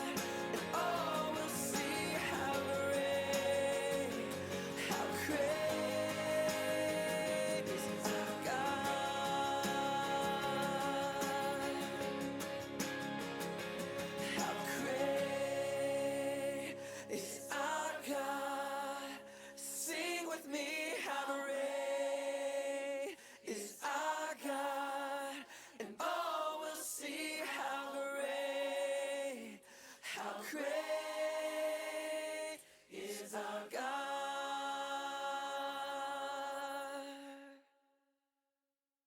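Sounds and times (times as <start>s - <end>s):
choir singing long held notes: 0.0s - 13.2s, 14.1s - 19.3s.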